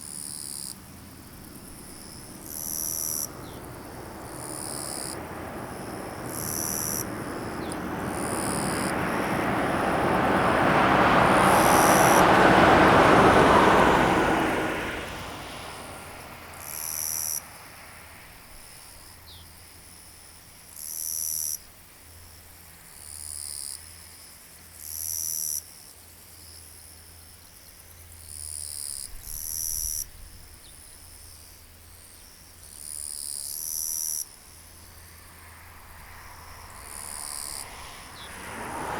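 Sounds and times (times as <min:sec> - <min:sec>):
insects calling in pulses: 0:00.0 - 0:14.5, 0:15.1 - 0:19.7, 0:26.4 - 0:38.9
vehicle passing: 0:00.8 - 0:18.9, 0:34.4 - 0:38.9.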